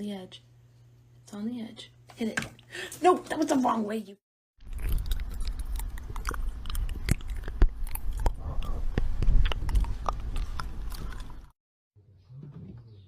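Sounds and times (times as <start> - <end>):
crunching: 4.6 - 11.5.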